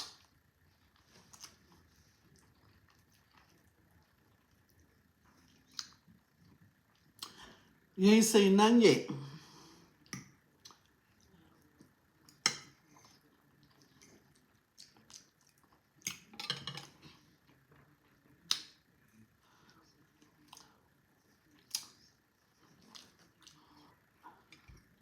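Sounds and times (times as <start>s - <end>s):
person chewing: 0.0s - 7.4s, 12.9s - 16.2s.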